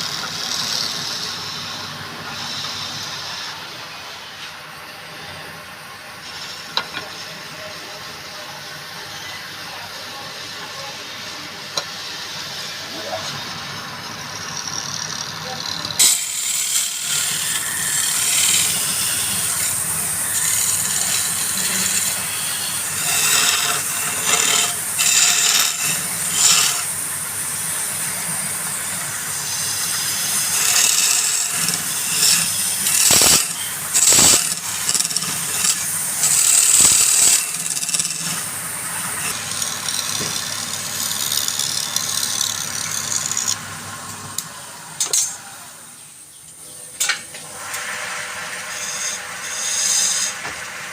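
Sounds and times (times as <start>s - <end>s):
lathe tool scraping wood: 0.0s - 3.9s, 6.2s - 7.3s, 14.1s - 43.6s, 48.1s - 50.6s.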